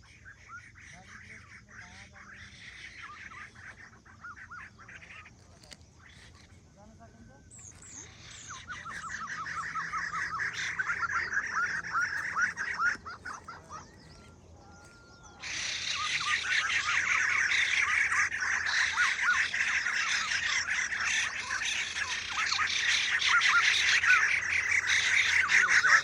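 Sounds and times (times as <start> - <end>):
birds chirping chorus: 0.0 - 26.0.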